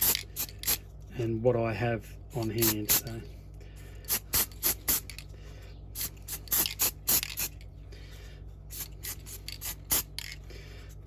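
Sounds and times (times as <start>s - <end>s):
steady low hum: 0.0s - 11.0s
aerosol can hissing: 8.7s - 10.1s.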